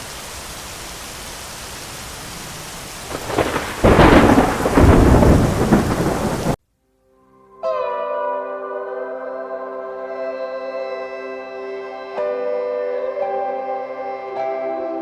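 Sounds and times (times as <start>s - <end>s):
steady rain: 0.0s - 6.6s
thunder rumbling: 2.3s - 6.6s
music: 6.9s - 15.0s.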